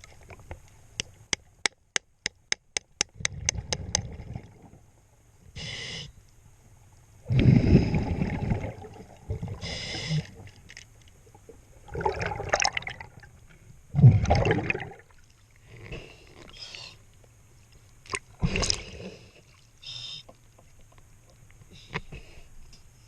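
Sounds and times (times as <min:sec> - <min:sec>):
gurgling exhaled bubbles: 0:03.2 - 0:04.8, 0:07.3 - 0:10.5, 0:11.8 - 0:13.3, 0:13.9 - 0:15.2
regulator hissing inhalations: 0:05.6 - 0:06.2, 0:09.6 - 0:10.4, 0:18.5 - 0:20.4.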